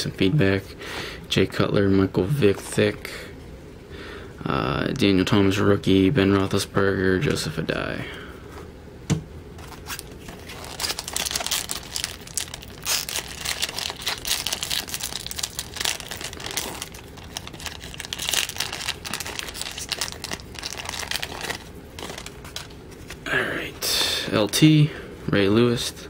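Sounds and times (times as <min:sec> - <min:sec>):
wrapper tearing and crinkling: 0:09.6 - 0:23.2.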